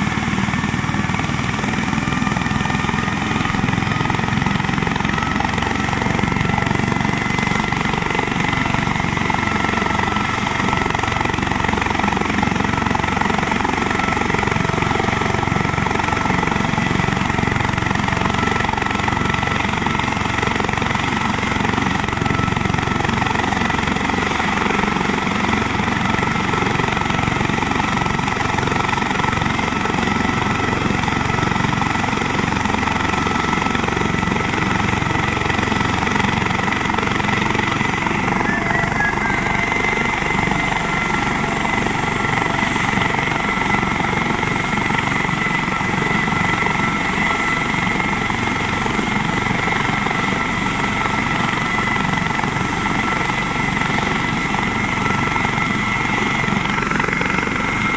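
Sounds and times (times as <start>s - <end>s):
helicopter rotor running: 0.0s - 57.9s
high whine: 37.2s - 41.9s.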